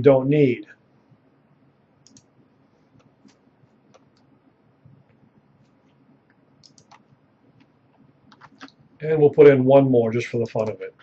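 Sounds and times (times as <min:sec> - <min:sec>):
computer mouse clicks: 0:02.0 - 0:02.3, 0:03.0 - 0:04.3, 0:04.9 - 0:08.8, 0:10.4 - 0:10.8.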